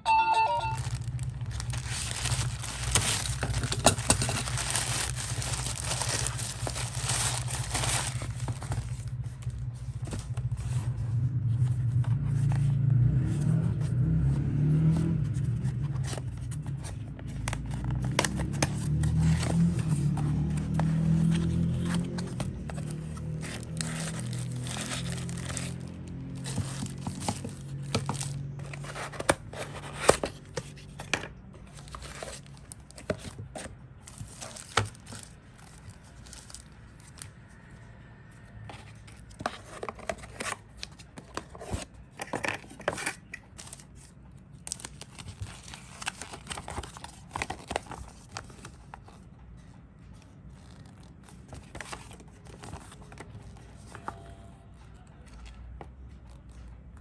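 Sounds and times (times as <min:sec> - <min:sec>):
packaging tearing and crinkling: 0:00.8 - 0:09.2, 0:17.7 - 0:30.5, 0:31.7 - 0:37.3, 0:42.6 - 0:48.7.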